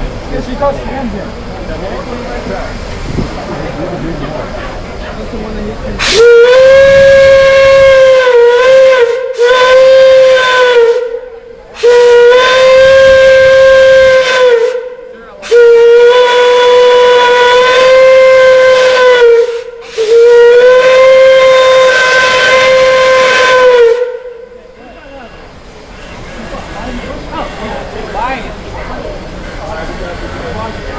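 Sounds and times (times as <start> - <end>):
steam whistle blasts: 6.0 - 24.6.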